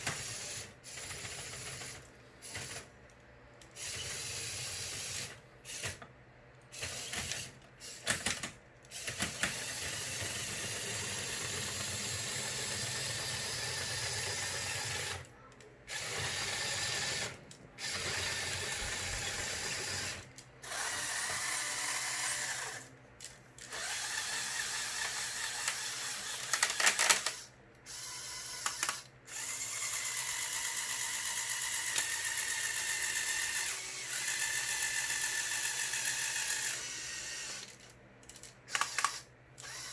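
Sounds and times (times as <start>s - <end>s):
small electric motors whirring: 3.7s - 6.0s, 6.7s - 8.3s, 8.9s - 15.3s, 15.9s - 39.9s
sharp plastic clicks: 25.0s - 27.5s, 37.5s - 39.9s.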